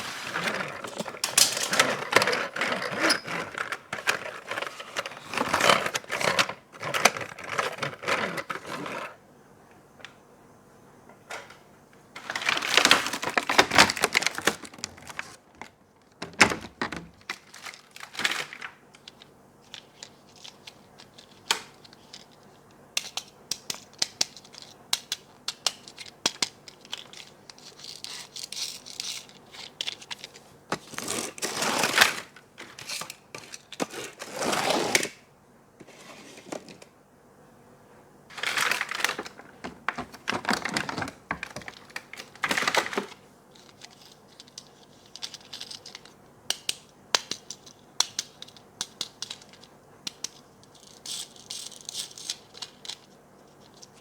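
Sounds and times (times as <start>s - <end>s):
packaging crinkling: 0.0s - 9.2s, 12.2s - 22.5s, 24.4s - 35.0s, 38.3s - 46.2s.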